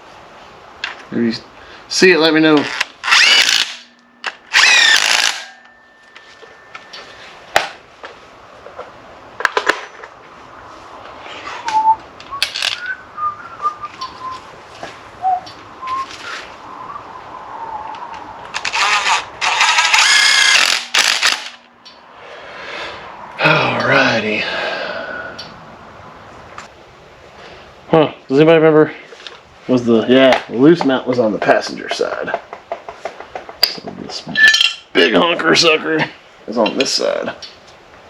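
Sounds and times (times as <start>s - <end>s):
power drill whining: 2.5s - 7.3s, 18.5s - 21.7s.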